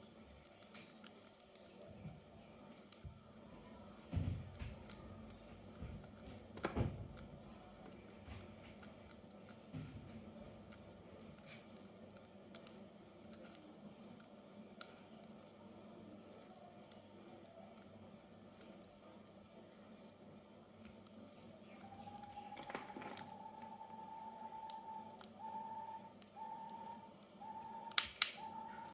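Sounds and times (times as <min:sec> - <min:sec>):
sharp click: 0:27.9 - 0:28.4.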